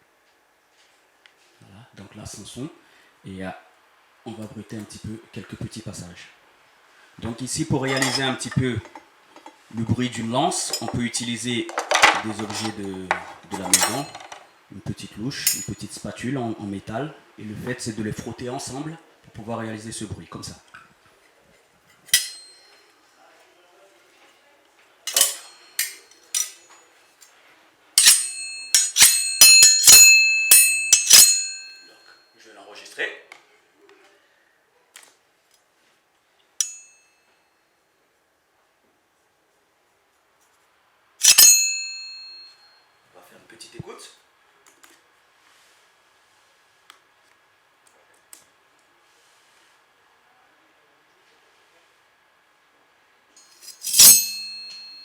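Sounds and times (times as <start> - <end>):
metal utensils scraping and clanging: 7.8 - 14.5, 15.4 - 15.8, 21.9 - 22.8, 25.1 - 26.8, 28.0 - 31.9, 41.2 - 42.4, 53.4 - 55.0.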